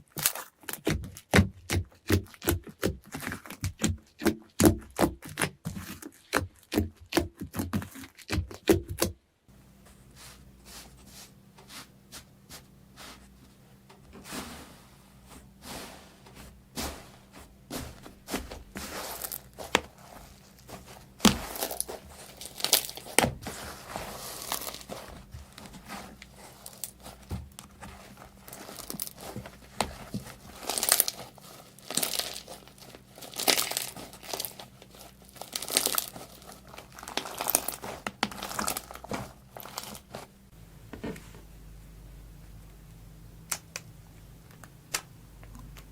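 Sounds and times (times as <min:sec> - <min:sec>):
slime popping and crackling: 0:18.2 - 0:40.3.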